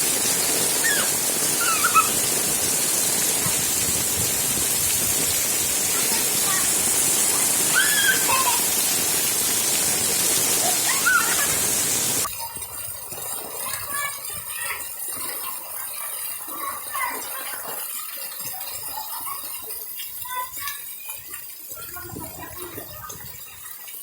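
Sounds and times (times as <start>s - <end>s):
heavy rain pouring: 0.0s - 12.5s
children shouting: 0.1s - 3.8s, 5.7s - 12.3s
faint voices: 5.6s - 12.3s.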